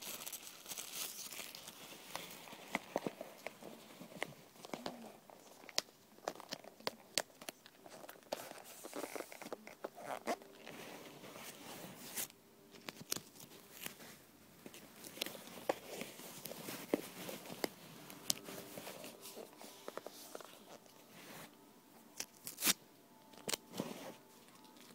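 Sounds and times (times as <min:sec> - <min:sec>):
taps and crinkles of handling: 0:00.7 - 0:10.8
duct tape ripping off roll: 0:22.2 - 0:22.8.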